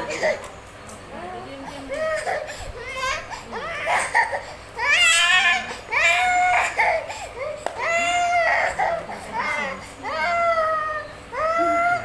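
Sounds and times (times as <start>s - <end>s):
baby crying: 2.0s - 12.0s.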